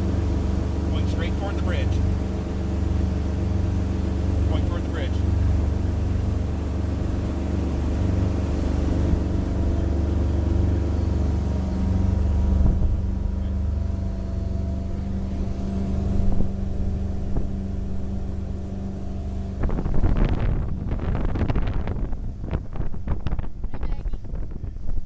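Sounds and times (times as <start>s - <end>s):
motorboat engine running: 0.0s - 25.0s
wind buffeting microphone: 5.2s - 25.0s.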